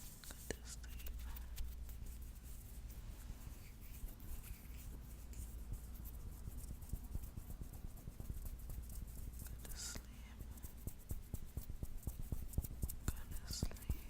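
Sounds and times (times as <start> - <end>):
steady low hum: 0.0 - 14.0
fingernails scratching skin: 0.2 - 2.7.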